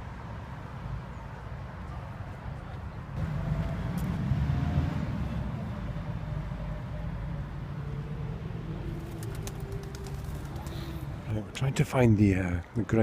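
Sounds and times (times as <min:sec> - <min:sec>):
low rumble of road traffic: 0:00.0 - 0:13.0
passing vehicle engine: 0:03.2 - 0:11.3.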